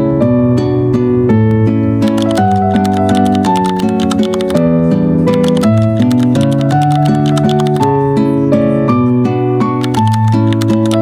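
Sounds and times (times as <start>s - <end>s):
light instrumental music: 0.0s - 11.0s.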